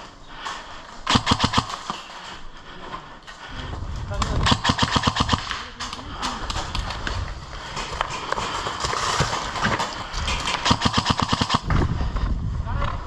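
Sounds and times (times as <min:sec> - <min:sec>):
quick footsteps: 0:00.4 - 0:12.4
airsoft rifle automatic fire: 0:01.1 - 0:02.1, 0:04.4 - 0:05.8, 0:07.7 - 0:11.7.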